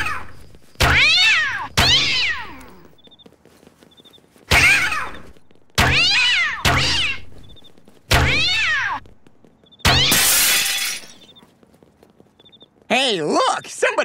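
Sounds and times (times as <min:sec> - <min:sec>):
cartoon cat screeching yowl: 0:00.9 - 0:02.7, 0:05.8 - 0:07.2.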